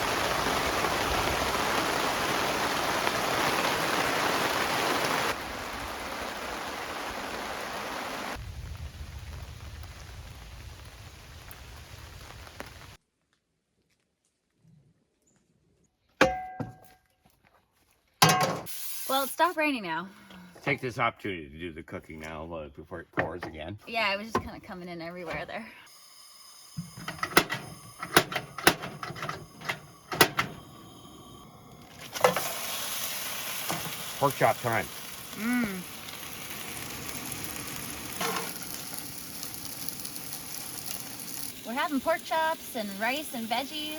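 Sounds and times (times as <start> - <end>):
heavy rain pouring: 0.0 - 13.0, 27.0 - 43.9
camp cooking gear clattering: 16.2 - 17.0, 18.2 - 18.7, 23.1 - 25.6, 26.8 - 30.8, 31.8 - 32.8, 33.6 - 34.8, 38.2 - 38.9.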